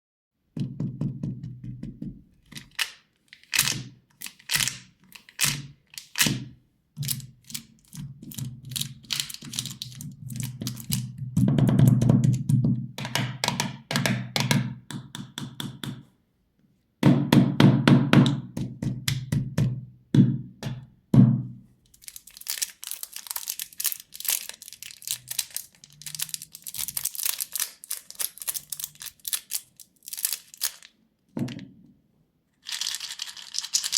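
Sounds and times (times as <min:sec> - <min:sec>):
candy taps and clacks: 0:00.6 - 0:16.0, 0:17.0 - 0:21.3
plastic wrapper crinkling: 0:07.0 - 0:11.1, 0:21.9 - 0:30.9, 0:32.6 - 0:33.9.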